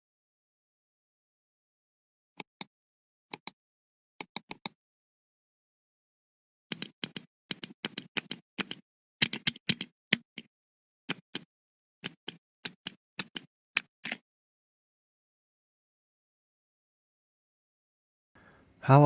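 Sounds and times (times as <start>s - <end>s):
computer mouse clicks: 3.3s - 3.6s, 4.2s - 4.8s, 6.7s - 10.5s, 11.1s - 14.2s.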